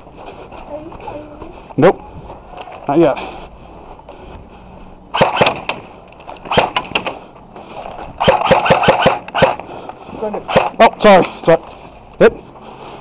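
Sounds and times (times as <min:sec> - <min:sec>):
airsoft guns firing: 0:05.1 - 0:05.9, 0:06.5 - 0:07.2, 0:08.2 - 0:09.6, 0:10.5 - 0:10.9.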